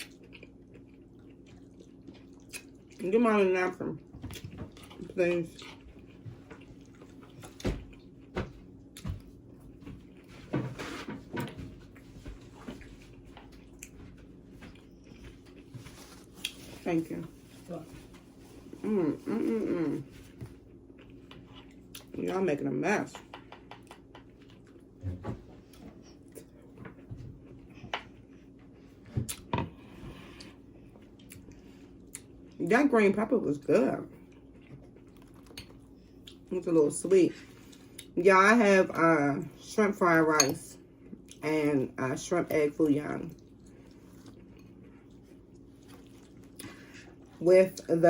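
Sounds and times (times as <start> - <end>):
chewing vegetables: 0.0 - 3.2, 3.9 - 10.4, 11.4 - 22.5, 23.6 - 29.5, 30.4 - 32.6, 33.6 - 36.6, 42.2 - 47.4
faint steady hum: 0.0 - 48.0.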